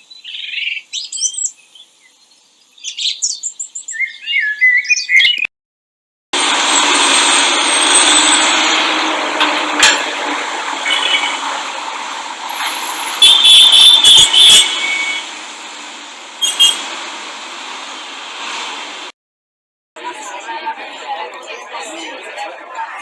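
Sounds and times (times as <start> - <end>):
passing vehicles: 6.4 - 19.1.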